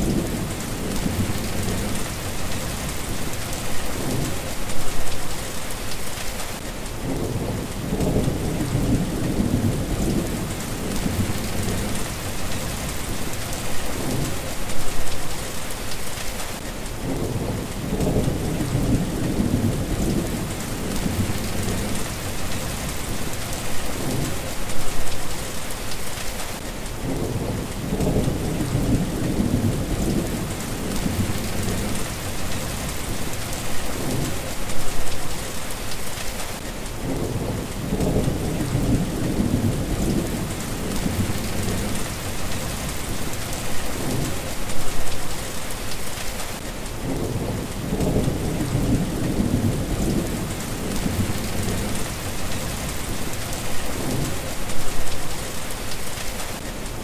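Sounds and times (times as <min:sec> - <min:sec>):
low rolling thunder: 0:00.0 - 0:04.5, 0:07.0 - 0:14.5, 0:17.0 - 0:24.5, 0:27.0 - 0:34.9, 0:37.0 - 0:44.9, 0:47.0 - 0:55.2
steady rain falling: 0:00.0 - 0:57.0.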